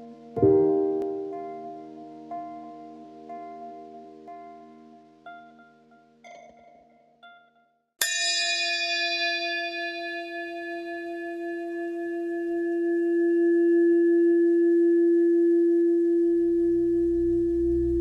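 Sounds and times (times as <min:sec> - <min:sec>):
struck bell ringing: 0:08.0 - 0:11.2
low hum: 0:16.2 - 0:18.0.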